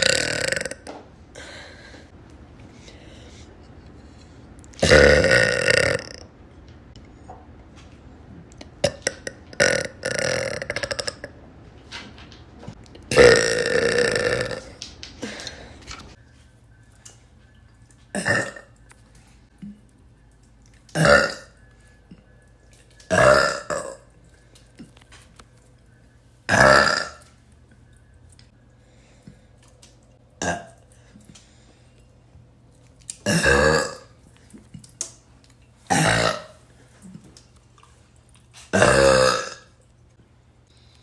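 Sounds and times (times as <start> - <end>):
woman burping: 0.0 - 1.0, 4.8 - 6.3, 8.7 - 11.4, 13.1 - 15.4, 18.1 - 18.7, 20.9 - 21.6, 23.1 - 24.1, 26.5 - 27.2, 30.4 - 30.8, 33.2 - 34.2, 35.9 - 36.6, 38.7 - 39.8.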